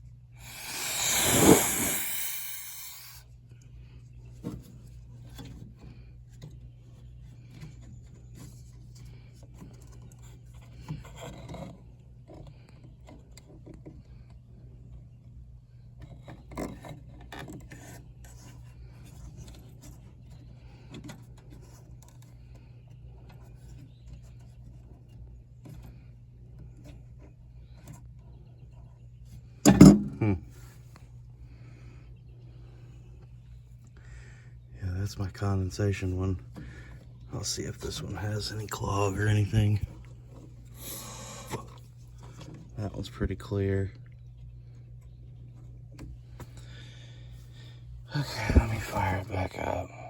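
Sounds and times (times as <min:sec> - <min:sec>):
steady low hum: 0:00.0 - 0:11.0, 0:25.3 - 0:50.0
hoses rubbing and knocking: 0:00.4 - 0:03.2.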